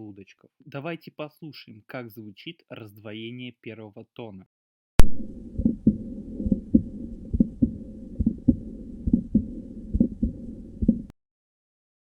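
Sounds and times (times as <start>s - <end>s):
heartbeat through stethoscope: 5.0s - 11.1s
faint hiss: 5.1s - 11.1s.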